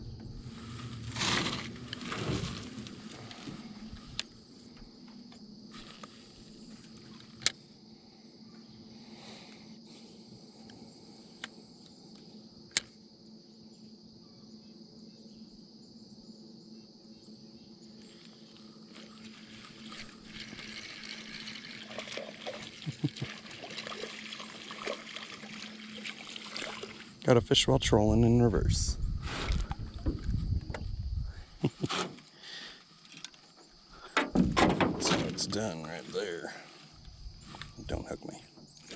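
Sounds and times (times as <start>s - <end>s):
water lapping at boat: 19.0s - 27.2s
water splashes: 19.3s - 27.2s.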